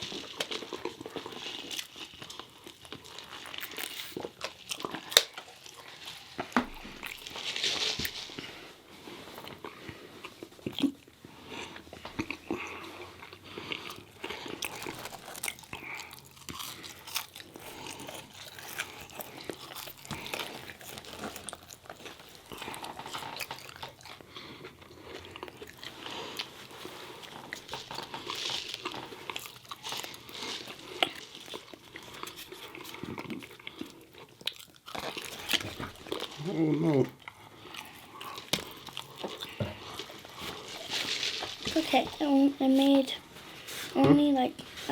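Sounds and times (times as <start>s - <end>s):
people chewing crunchy fried chicken: 0.0s - 44.9s.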